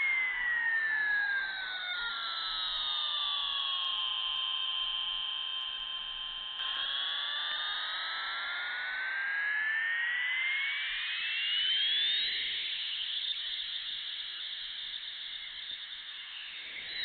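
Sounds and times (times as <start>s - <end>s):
toy airplane engine whine: 0.0s - 17.0s.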